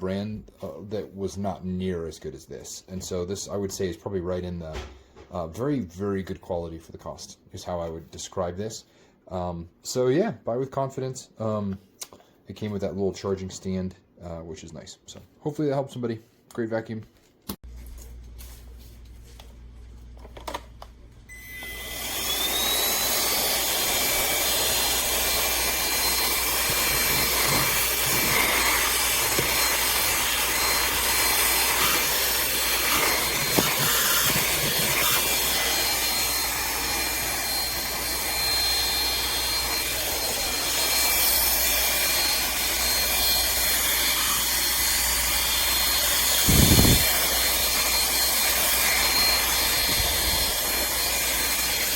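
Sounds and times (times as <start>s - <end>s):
handheld vacuum motor whine: 21.3s - 51.9s
rushing air: 46.4s - 47.2s.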